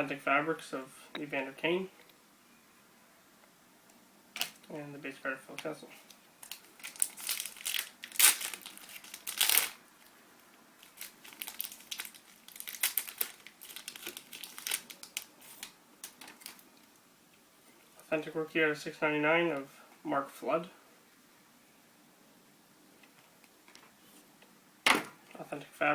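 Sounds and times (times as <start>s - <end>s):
wrapper tearing and crinkling: 4.3s - 4.7s, 6.0s - 10.1s, 10.8s - 17.0s.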